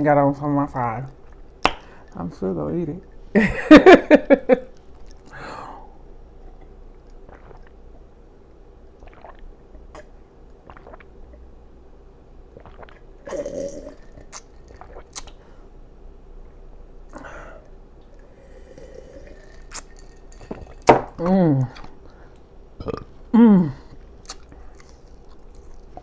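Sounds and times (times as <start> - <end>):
mouth clicks: 1.6 - 2.0, 14.3 - 15.4, 24.2 - 25.0
person chewing food: 7.1 - 7.7, 9.0 - 11.4, 12.6 - 15.4, 18.3 - 20.9, 23.9 - 26.0.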